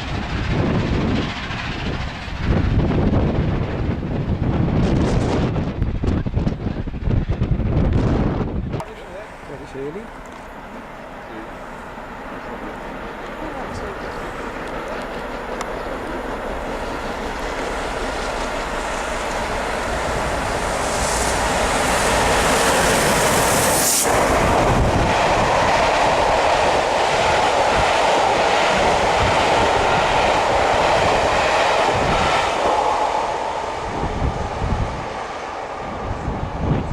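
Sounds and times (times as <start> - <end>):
train wheels rumbling on rail: 0.0 - 36.9
sharp rush: 10.9 - 36.5.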